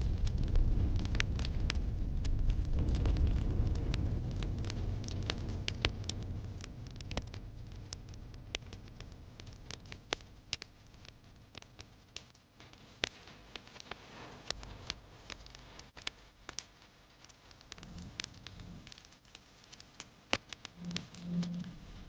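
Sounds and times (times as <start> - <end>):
low rumble: 0.0 - 9.8, 17.8 - 18.9, 20.8 - 22.0
wood fire crackling: 0.0 - 22.0.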